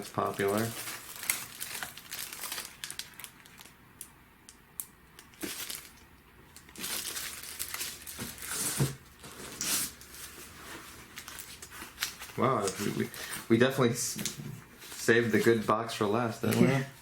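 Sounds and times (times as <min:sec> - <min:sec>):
plastic bags rustling and crinkling: 0:00.0 - 0:03.8, 0:05.2 - 0:17.0.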